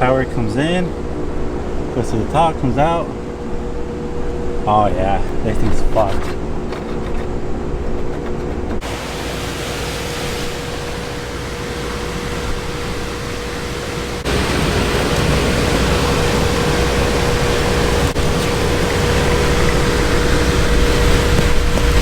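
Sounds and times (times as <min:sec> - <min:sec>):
constant hum: 0:00.0 - 0:22.0
rushing air and machinery: 0:08.5 - 0:22.0.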